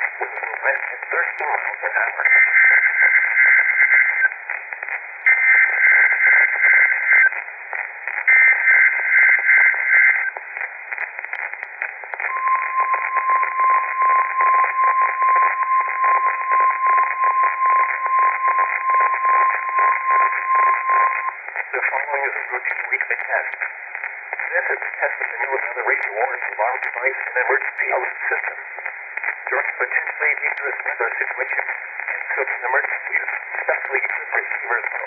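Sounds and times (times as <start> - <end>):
radio static hiss: 0.0 - 35.0
steady warning alarm tone: 12.3 - 21.3.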